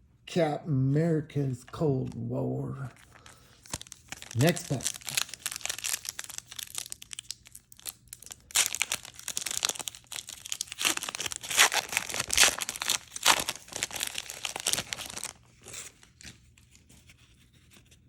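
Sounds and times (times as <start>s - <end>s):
plastic wrapper tearing and crinkling: 2.9s - 16.4s.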